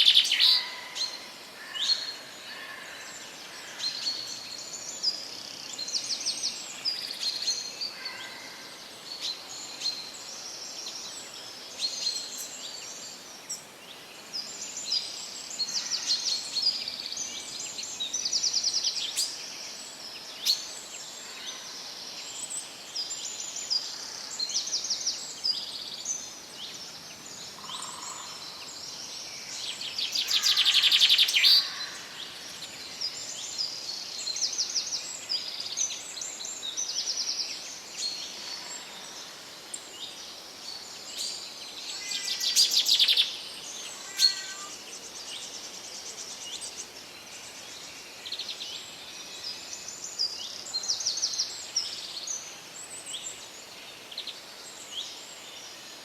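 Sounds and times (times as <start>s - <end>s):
faint background hiss: 0.0s - 56.0s
songbirds chirping and trilling: 0.0s - 56.0s
loud rapid bird trill: 44.0s - 44.7s.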